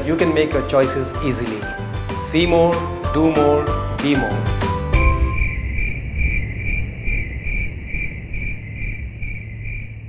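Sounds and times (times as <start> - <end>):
low steady rumble: 4.9 - 10.0
cricket chirping: 5.0 - 10.0.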